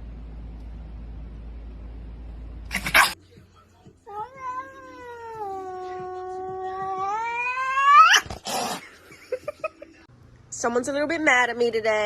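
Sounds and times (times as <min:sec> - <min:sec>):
cat yowling: 0:04.1 - 0:08.8.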